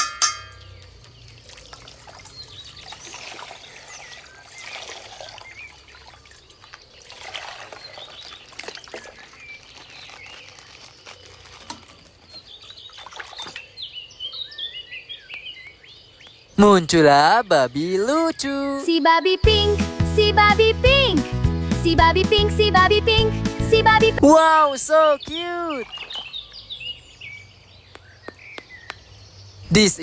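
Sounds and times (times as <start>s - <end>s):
water trickling and splashing: 0.2s - 14.3s, 24.3s - 27.1s
plastic crinkling clicks: 9.2s - 12.5s.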